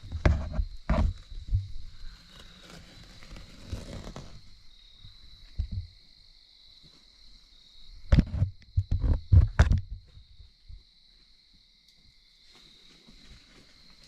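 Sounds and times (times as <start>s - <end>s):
heavy thumps and knocks: 0.0s - 1.9s, 5.6s - 6.0s, 8.1s - 10.8s
high insect chorus: 0.0s - 14.0s.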